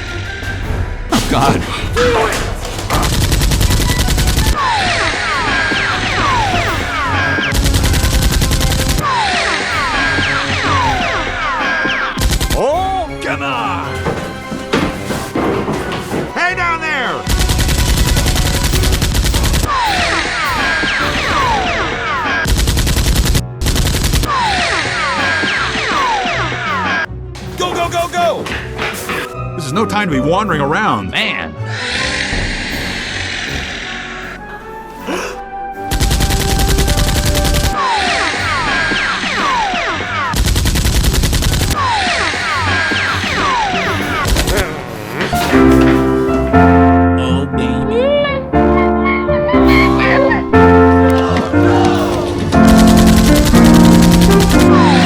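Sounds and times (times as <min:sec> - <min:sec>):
background music: 0:00.0 - 0:55.0
automatic gunfire: 0:52.6 - 0:55.0.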